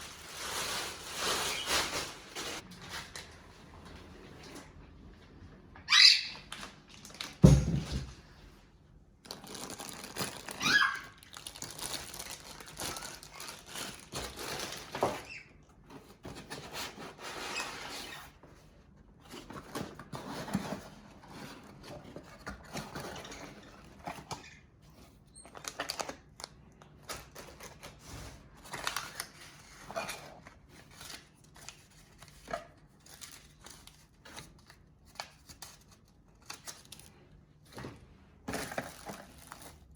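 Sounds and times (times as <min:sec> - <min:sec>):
wrapping rustling and tearing: 0:00.0 - 0:03.4, 0:06.5 - 0:07.4, 0:09.2 - 0:15.4, 0:25.4 - 0:37.1, 0:38.5 - 0:39.9.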